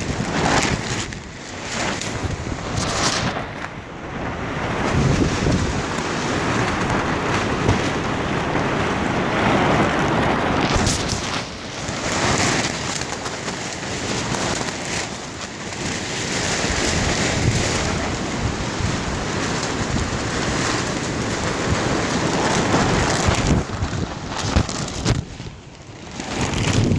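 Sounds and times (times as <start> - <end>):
storm wind buffeting microphone: 0.0 - 26.9.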